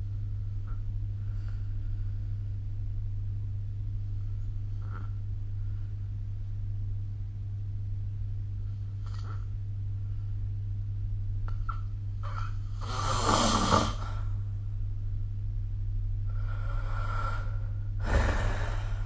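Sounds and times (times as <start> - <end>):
steady low hum: 0.0 - 19.0
person snoring: 12.8 - 14.3, 16.3 - 19.0.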